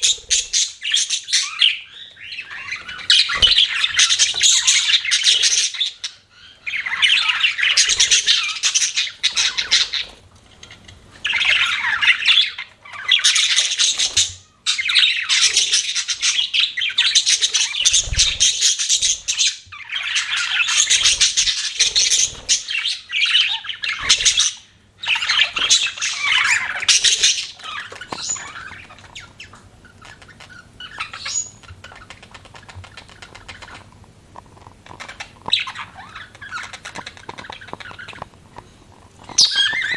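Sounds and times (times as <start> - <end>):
budgerigars chattering and chirping: 0.0 - 33.9, 34.8 - 38.3, 39.3 - 39.9.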